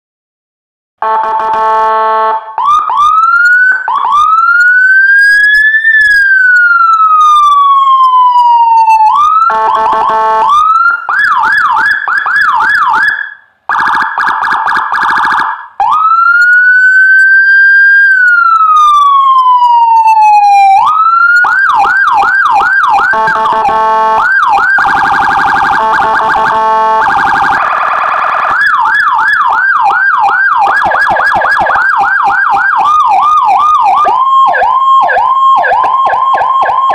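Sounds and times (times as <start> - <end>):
blaring horn tones: 1.0 - 2.6, 9.5 - 10.5, 23.1 - 24.3, 25.7 - 27.4
police siren wail: 1.0 - 36.9
siren yelp: 1.0 - 36.9.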